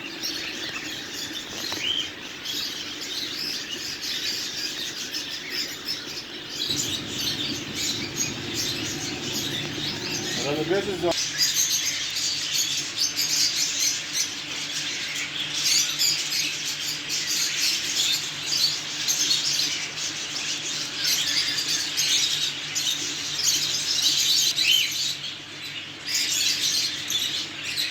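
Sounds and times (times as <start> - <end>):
small birds chirping and squawking: 0.0 - 27.9
faint low hum: 6.6 - 11.2.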